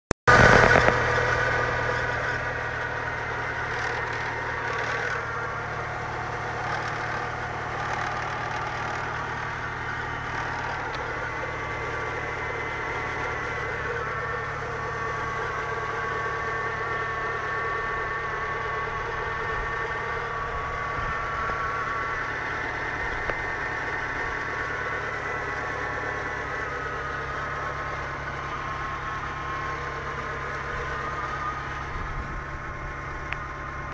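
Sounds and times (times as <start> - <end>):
car engine idling: 0.3 - 33.9
high-pitched engine whine: 0.3 - 33.9.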